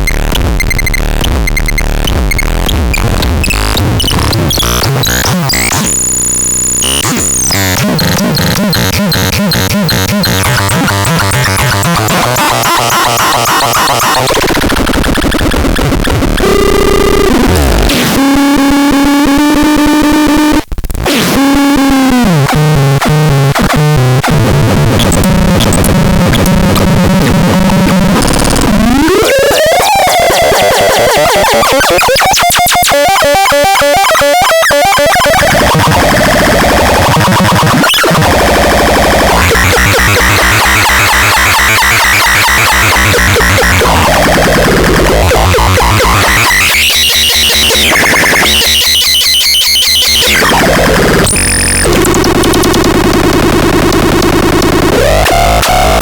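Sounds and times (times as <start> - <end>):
buzzy synthesizer tones: 0.0 - 56.0
synthesizer drones: 32.8 - 56.0.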